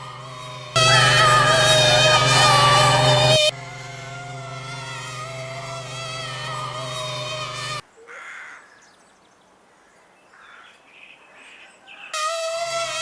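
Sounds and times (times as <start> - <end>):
cartoon insect buzzing drone: 0.0 - 7.8, 12.2 - 13.0
faint calls: 0.8 - 7.8.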